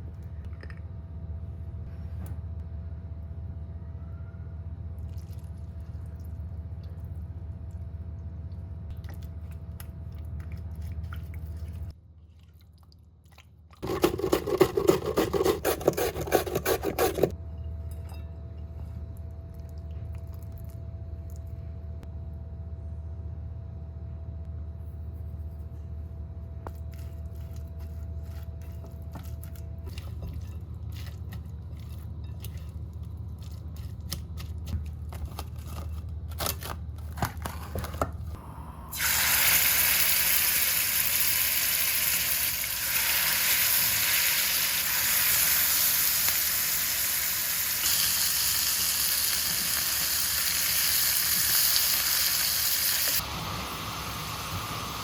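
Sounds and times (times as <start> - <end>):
low hum: 16.4 - 36.3, 36.9 - 39.5
food frying in hot oil: 39.0 - 55.0.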